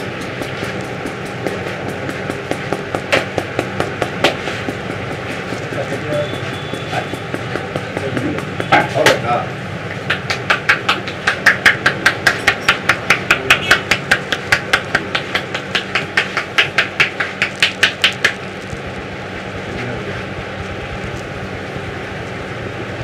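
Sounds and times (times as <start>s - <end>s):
hands tapping a head: 0.0s - 9.2s, 9.9s - 18.5s.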